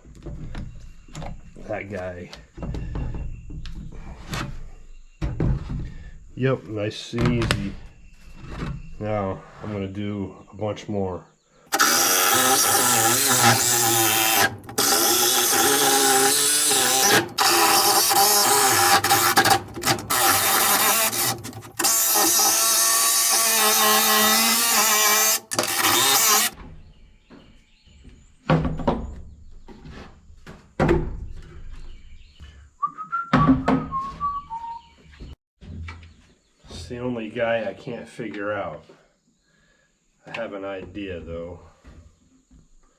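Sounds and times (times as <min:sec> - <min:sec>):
power saw cutting wood: 0:11.7 - 0:26.6.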